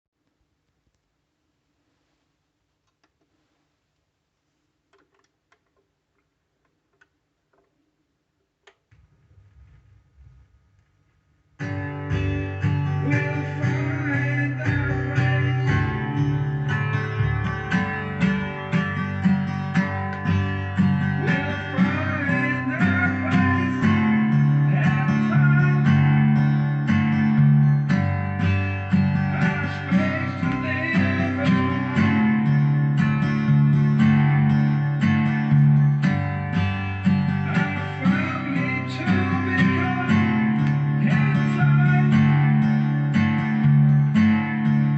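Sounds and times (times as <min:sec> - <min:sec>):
guitar strumming: 0:11.6 - 0:44.9.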